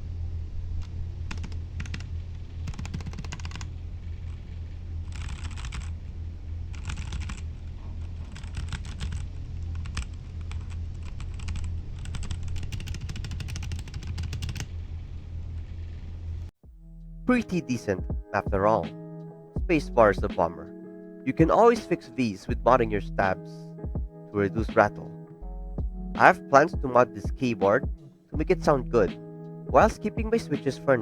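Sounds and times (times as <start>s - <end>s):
steady low hum: 0.0s - 21.7s, 22.5s - 30.4s
mechanical keyboard key clacks: 1.3s - 3.7s, 6.8s - 7.4s, 8.2s - 14.7s.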